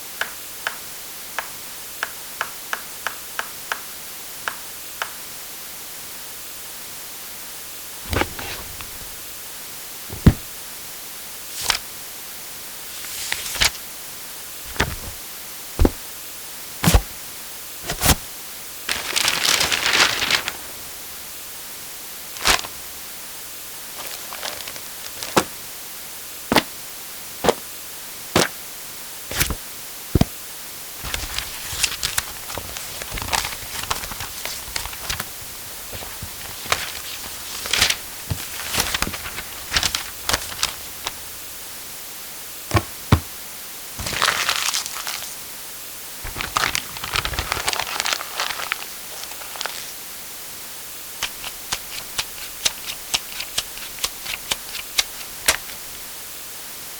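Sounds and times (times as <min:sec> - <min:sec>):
steady hiss: 0:00.0 - 0:56.9
paper rustling: 0:08.1 - 0:09.3, 0:10.1 - 0:10.5, 0:11.5 - 0:11.8, 0:12.9 - 0:13.8, 0:14.7 - 0:15.2, 0:15.8 - 0:16.0, 0:16.8 - 0:17.2, 0:17.8 - 0:18.3, 0:18.9 - 0:21.2, 0:22.4 - 0:23.0, 0:24.0 - 0:25.6, 0:29.3 - 0:29.6, 0:31.0 - 0:41.5, 0:42.7 - 0:43.3, 0:44.0 - 0:45.4, 0:46.2 - 0:50.0, 0:51.2 - 0:55.9
soft knocks of book: 0:10.1 - 0:10.5, 0:14.7 - 0:15.2, 0:15.8 - 0:16.0, 0:16.8 - 0:17.2, 0:29.3 - 0:29.6, 0:35.9 - 0:41.2, 0:42.7 - 0:43.3.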